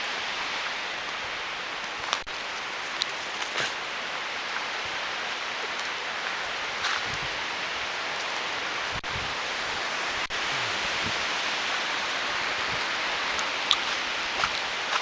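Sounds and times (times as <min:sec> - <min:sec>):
rain falling: 0:00.0 - 0:15.0
sharp drip ticks: 0:11.7 - 0:15.0.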